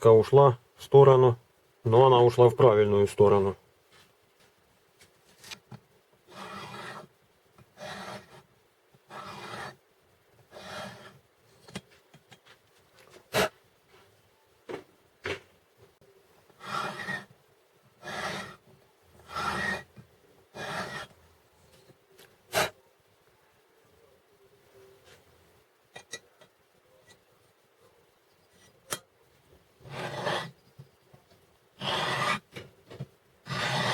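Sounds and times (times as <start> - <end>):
metal cutter scraping: 16.6 - 17.3, 18.0 - 18.6, 19.3 - 19.9, 20.6 - 21.1, 29.8 - 30.5, 31.8 - 32.4, 33.5 - 33.9.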